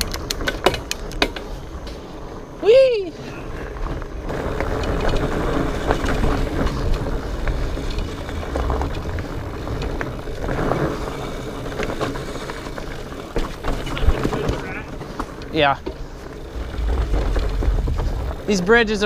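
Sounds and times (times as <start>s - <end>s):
bike clicks and rattles: 0.0s - 2.5s, 3.6s - 19.0s
bike tyres rumbling over ground: 0.1s - 19.0s
wind on microphone: 4.2s - 11.8s, 16.4s - 19.0s.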